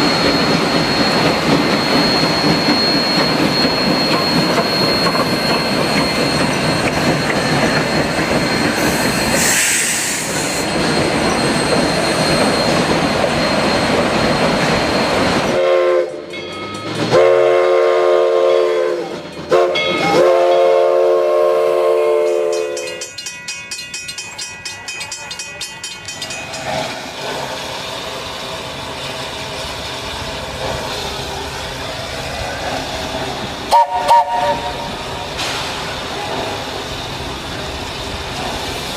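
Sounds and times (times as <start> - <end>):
steam train running on rails: 0.0 - 38.9
steam train whistle: 8.8 - 10.6, 15.5 - 16.3, 17.1 - 23.0, 33.6 - 35.2.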